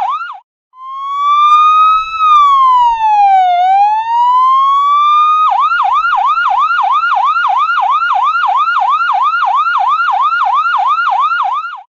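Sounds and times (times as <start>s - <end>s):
ambulance siren yelping: 0.0s - 11.9s.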